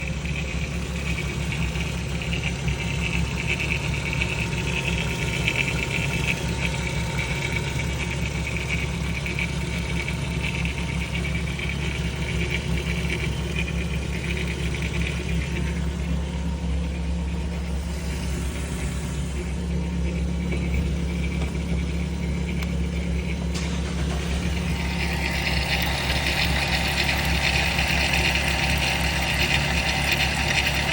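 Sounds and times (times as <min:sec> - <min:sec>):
engine running: 0:00.0 - 0:30.9
metallic rattle: 0:17.5 - 0:28.5.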